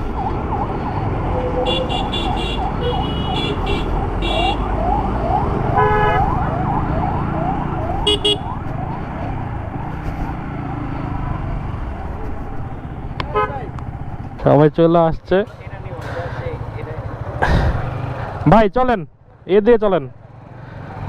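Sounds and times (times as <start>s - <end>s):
siren yelping: 0.0s - 12.8s
engines rumbling: 0.0s - 21.0s
vehicle horns honking: 1.6s - 4.7s, 5.8s - 6.4s, 8.0s - 8.6s, 12.7s - 13.8s.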